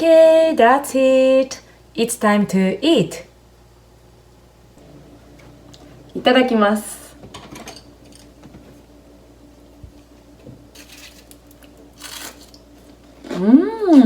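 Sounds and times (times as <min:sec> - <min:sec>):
crunching of crispy food: 0:10.7 - 0:13.5
person humming with enjoyment: 0:13.4 - 0:14.0.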